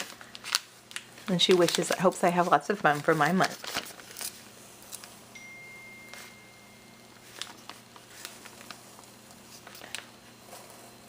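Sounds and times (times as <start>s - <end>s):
gift wrapping rustling: 0.0s - 11.0s
thin steady high tone: 5.3s - 7.9s.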